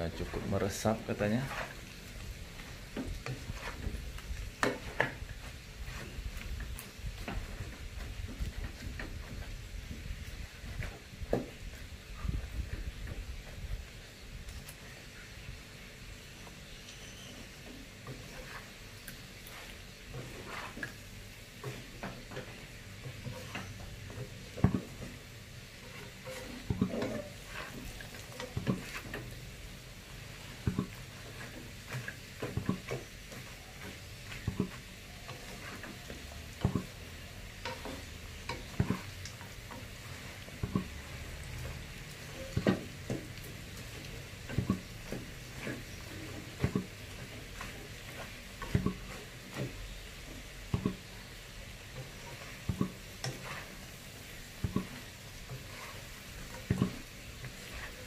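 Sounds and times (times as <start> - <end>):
utensil scraping a pan: 0.0 - 9.5, 17.0 - 58.0
fish skin sizzling in a pan: 0.6 - 8.2, 14.1 - 58.0.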